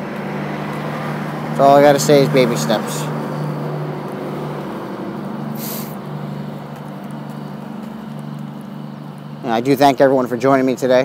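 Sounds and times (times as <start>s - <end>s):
engine humming: 0.0s - 11.0s
hiss burst: 5.5s - 6.0s.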